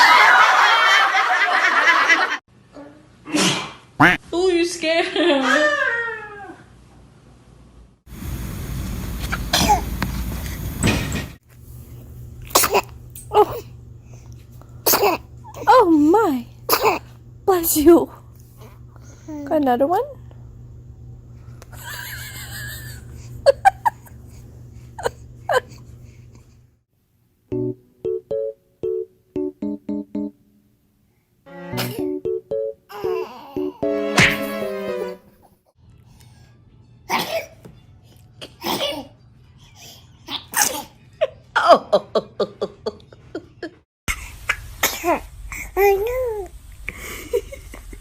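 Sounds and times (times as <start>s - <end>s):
baby sneezing: 3.3s - 4.2s, 9.5s - 9.9s, 12.5s - 13.6s, 14.9s - 15.7s, 16.7s - 17.1s, 37.1s - 37.6s, 40.3s - 41.0s
baby laughing: 32.9s - 35.4s.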